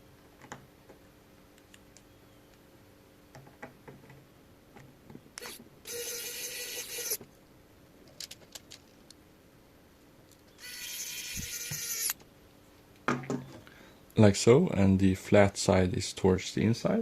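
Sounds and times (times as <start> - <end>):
small electric motor whirring: 5.4 - 7.2, 10.6 - 12.2
small parts and tool clicking: 5.4 - 7.2, 8.0 - 9.2, 10.3 - 12.2.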